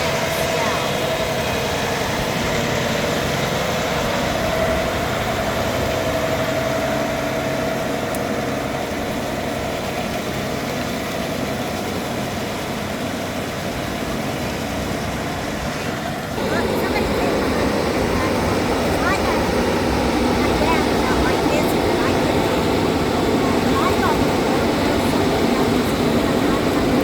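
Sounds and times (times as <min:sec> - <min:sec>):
engine idling: 0:00.0 - 0:27.0
faint whine: 0:15.9 - 0:27.0.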